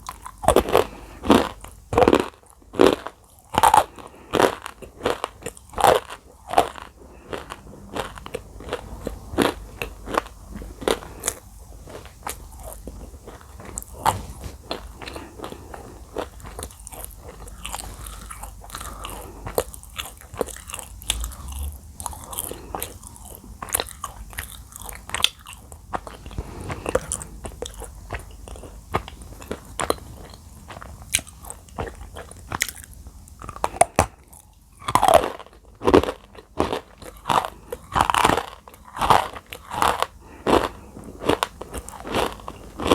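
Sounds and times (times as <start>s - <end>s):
chewing crunchy clay: 0.0s - 42.9s.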